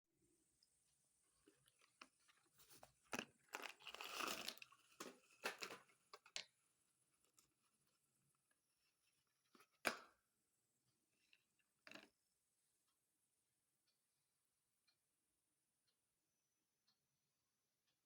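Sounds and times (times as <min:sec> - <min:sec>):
pencils being crunched by teeth: 0:03.1 - 0:06.4.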